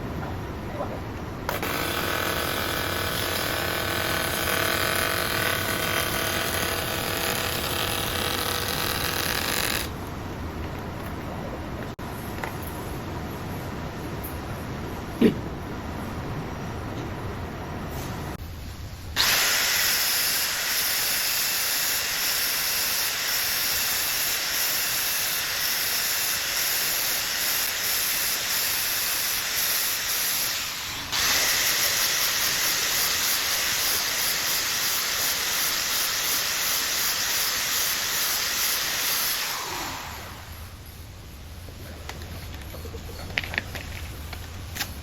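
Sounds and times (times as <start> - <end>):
welding arc hissing: 1.5 - 9.9, 19.2 - 40.7.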